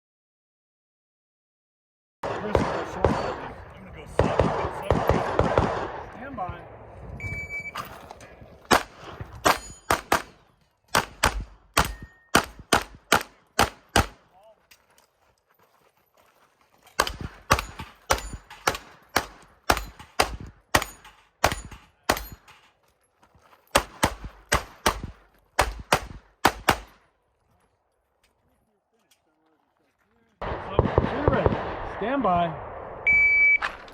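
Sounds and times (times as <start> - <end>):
pistol shots in fast strings: 2.2 - 3.5, 4.2 - 6.1, 17.0 - 22.4, 23.8 - 27.0.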